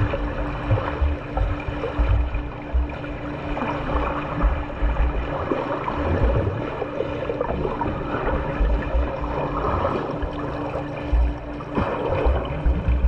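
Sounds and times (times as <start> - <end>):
low thumps: 0.0 - 5.3
faint steady hum: 0.0 - 13.0
water splashing from swimmer: 0.0 - 13.0.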